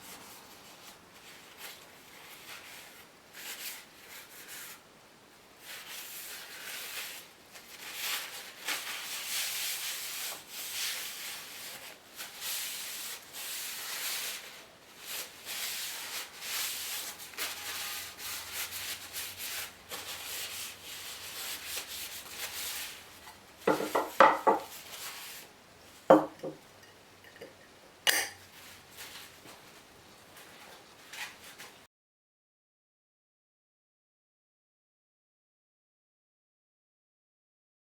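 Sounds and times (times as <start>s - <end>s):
wooden clacks and knocks: 23.7s - 24.7s.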